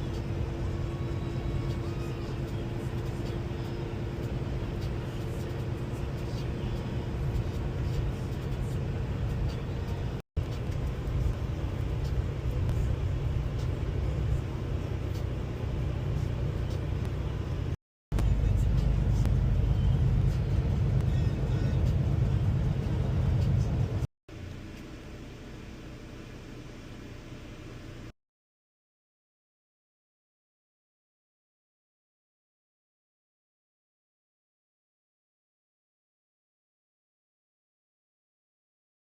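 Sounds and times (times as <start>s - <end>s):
truck engine and road noise: 0.0s - 28.1s.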